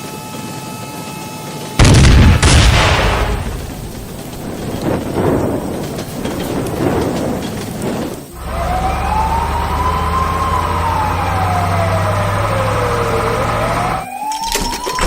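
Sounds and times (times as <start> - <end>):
engine hum: 1.8 - 14.1
emergency siren wailing: 8.3 - 15.0.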